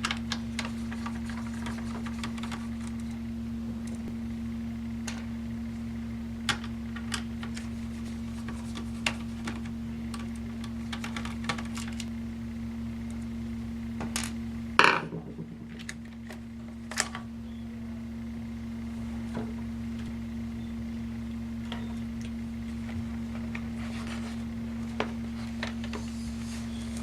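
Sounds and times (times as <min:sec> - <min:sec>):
steady electrical hum: 0:00.0 - 0:27.0
parts clattering: 0:14.0 - 0:17.3.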